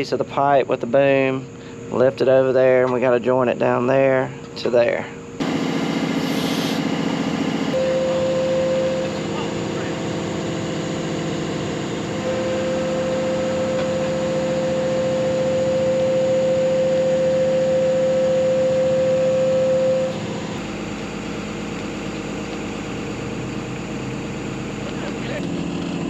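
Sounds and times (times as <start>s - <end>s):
high hydraulic whine: 0.6s - 26.0s
excavator diesel engine running: 3.8s - 26.0s.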